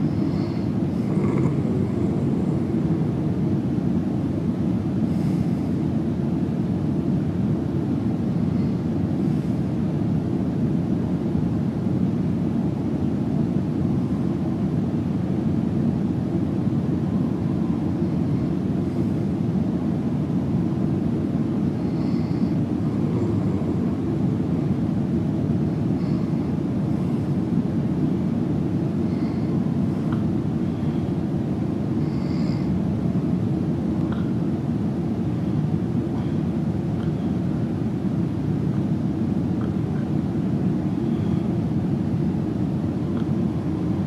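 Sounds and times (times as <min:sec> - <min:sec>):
steady low droning noise: 0:00.0 - 0:44.0
man snoring: 0:00.2 - 0:02.8.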